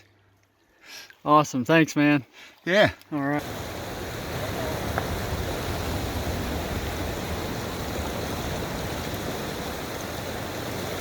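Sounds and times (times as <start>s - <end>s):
fast-flowing river rushing: 3.4s - 11.0s.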